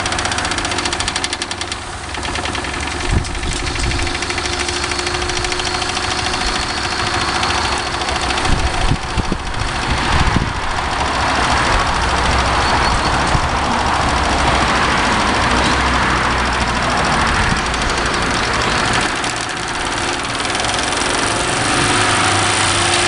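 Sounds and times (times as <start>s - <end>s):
toy steam engine running fast: 0.0s - 23.0s
steam hiss: 18.1s - 23.0s.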